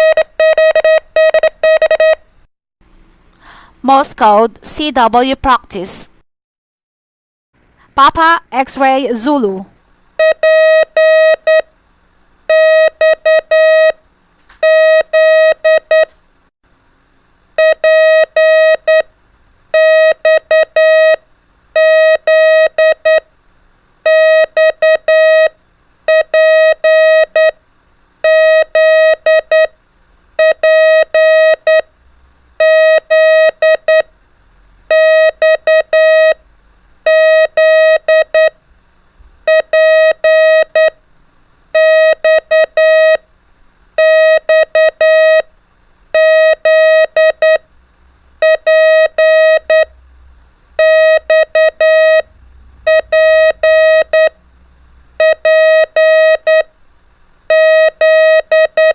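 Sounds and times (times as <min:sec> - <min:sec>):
morse code beeps: 0:00.0 - 0:02.2, 0:10.2 - 0:11.7, 0:12.5 - 0:14.0, 0:14.6 - 0:16.1, 0:17.6 - 0:19.1, 0:19.8 - 0:21.2, 0:21.8 - 0:23.2, 0:24.1 - 0:25.5, 0:26.1 - 0:27.6, 0:28.2 - 0:29.7, 0:30.4 - 0:31.8, 0:32.6 - 0:34.1, 0:34.9 - 0:36.4, 0:37.1 - 0:38.6, 0:39.5 - 0:41.0, 0:41.8 - 0:43.2, 0:44.0 - 0:45.5, 0:46.2 - 0:47.6, 0:48.4 - 0:49.9, 0:50.8 - 0:52.3, 0:52.9 - 0:54.4, 0:55.2 - 0:56.7, 0:57.5 - 0:58.9.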